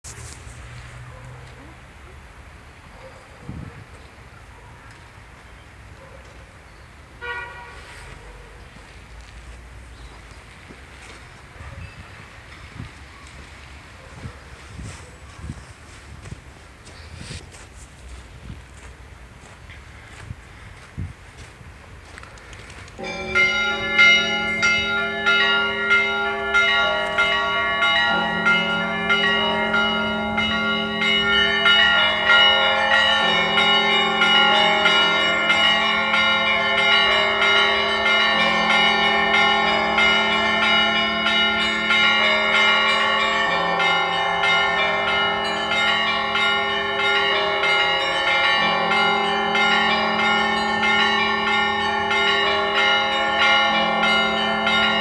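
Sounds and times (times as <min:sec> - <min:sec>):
deep bells ringing: 0:23.0 - 0:55.0.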